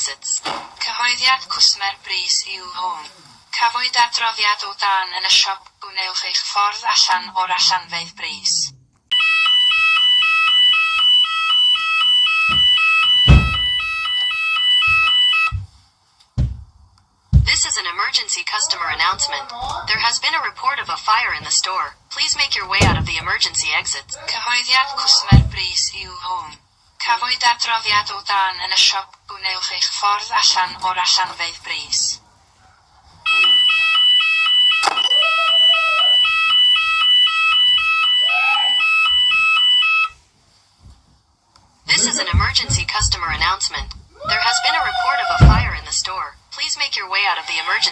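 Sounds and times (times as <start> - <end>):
fire alarm two-pitch tone: 9.1 - 15.6, 33.3 - 40.2
low thumps: 12.5 - 14.0, 16.4 - 17.8, 22.3 - 24.2, 25.2 - 26.2, 41.9 - 46.1.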